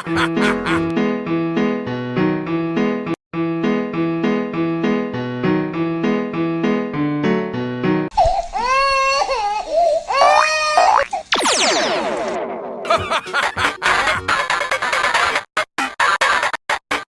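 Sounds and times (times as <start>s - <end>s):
electric piano tune: 0.2s - 8.1s
cartoon wailing cry: 8.6s - 11.2s.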